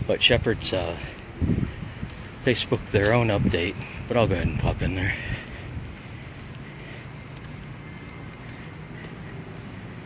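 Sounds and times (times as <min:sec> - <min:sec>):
wind noise on microphone: 0:00.0 - 0:06.4
low engine hum: 0:00.0 - 0:10.0.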